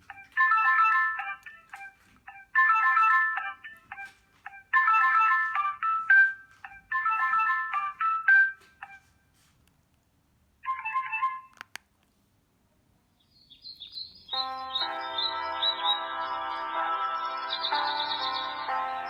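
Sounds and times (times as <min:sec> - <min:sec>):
phone ringtone melodies: 0:00.0 - 0:09.1, 0:10.6 - 0:11.6, 0:14.4 - 0:19.0
high chirps: 0:13.3 - 0:19.0.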